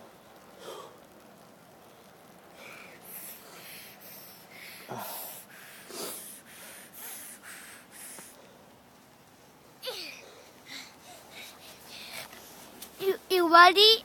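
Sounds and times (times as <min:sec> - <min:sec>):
breathing: 0:00.6 - 0:01.0, 0:02.0 - 0:08.8, 0:10.2 - 0:12.7.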